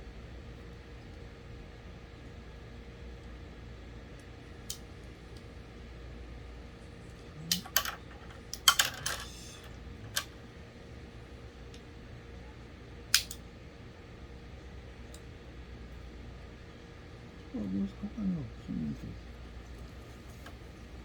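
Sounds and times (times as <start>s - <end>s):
steady low hum: 0.0s - 21.0s
small hard parts clicking: 7.5s - 10.3s.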